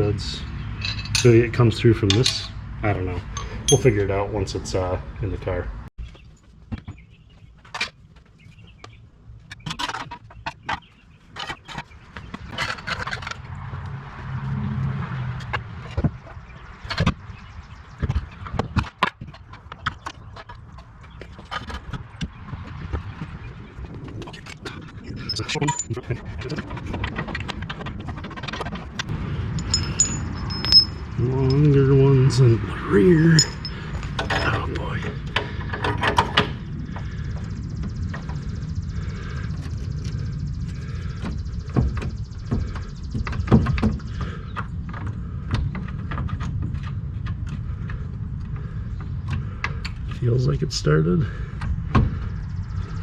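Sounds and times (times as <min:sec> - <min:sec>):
metal bolts rattling: 0:00.8 - 0:02.6, 0:03.3 - 0:04.2, 0:29.6 - 0:36.6
metal clicks of bolts and tools: 0:02.1 - 0:02.5, 0:29.6 - 0:31.8, 0:33.4 - 0:34.6
steady low hum: 0:36.4 - 0:53.0.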